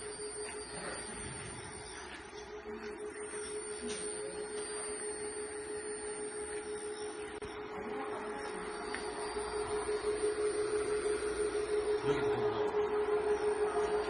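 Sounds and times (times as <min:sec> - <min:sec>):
electric motor whine: 0:00.0 - 0:14.0.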